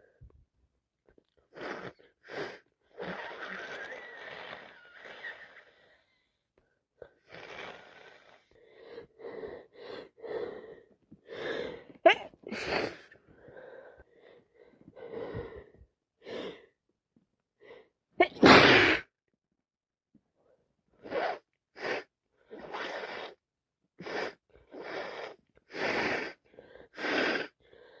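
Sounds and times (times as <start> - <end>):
person sneezing: 12.1 - 13.1, 18.2 - 19.1
noisy breathing through nose: 24.0 - 28.0.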